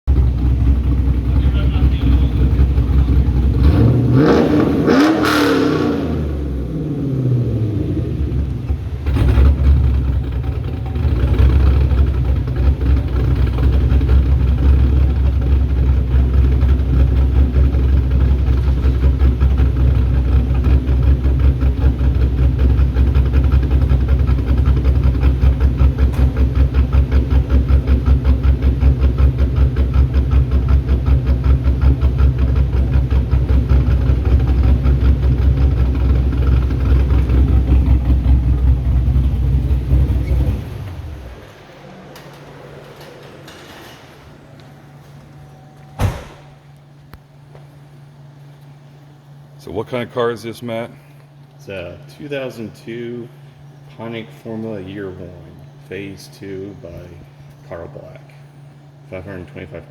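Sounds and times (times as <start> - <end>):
car engine revving: 0.1 - 43.6
car engine idling with lope: 0.1 - 59.9.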